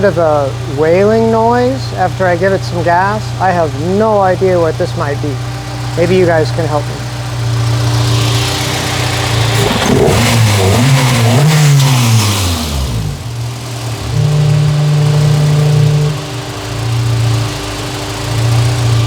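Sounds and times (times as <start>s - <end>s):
car engine idling and revving: 0.0s - 19.0s
foghorn-like wail: 14.0s - 17.4s.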